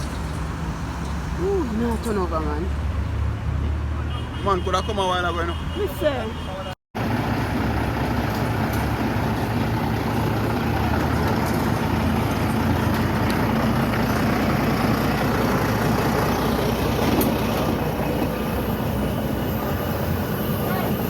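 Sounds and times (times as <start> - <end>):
heavy vehicle engine running: 7.0 - 21.0.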